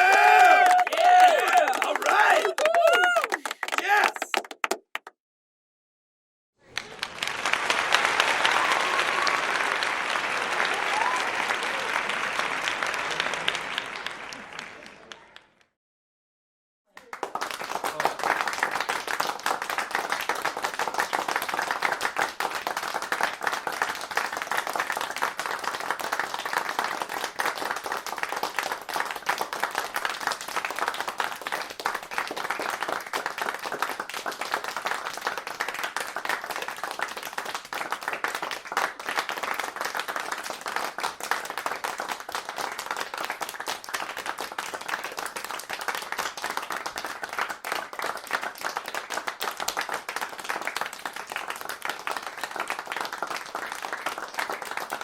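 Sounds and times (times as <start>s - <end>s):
crowd applauding: 0.0s - 5.1s, 6.6s - 15.7s, 16.9s - 55.0s.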